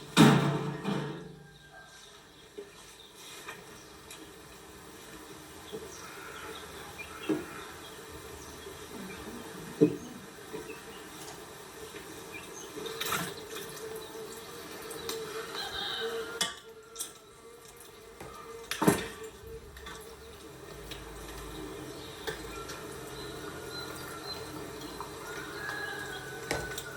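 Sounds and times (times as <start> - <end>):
water running from a tap: 20.5 - 26.9.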